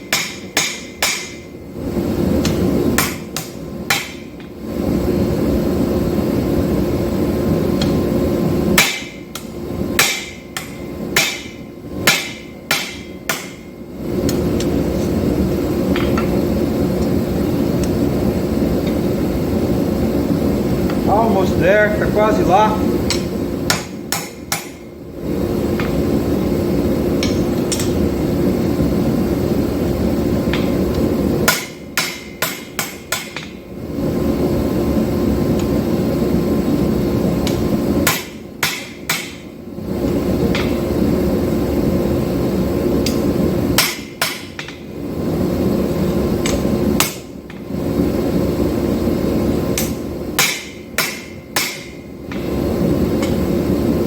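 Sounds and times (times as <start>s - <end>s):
hammer striking hot steel: 0.0s - 1.6s, 2.4s - 4.6s, 7.8s - 8.1s, 8.7s - 15.2s, 15.9s - 16.4s, 20.9s - 25.0s, 27.2s - 28.1s, 30.5s - 33.7s, 37.4s - 39.6s, 40.5s - 40.8s, 43.0s - 44.9s, 46.4s - 47.7s, 49.7s - 52.6s, 53.2s - 53.5s
steady rushing noise with hum: 0.0s - 54.0s.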